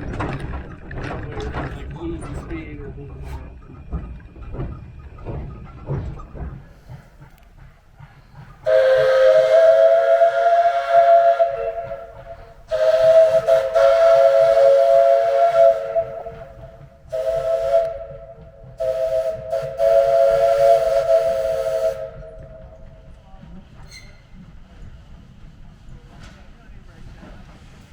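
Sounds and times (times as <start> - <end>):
steam locomotive whistle blasts: 8.6 - 23.0.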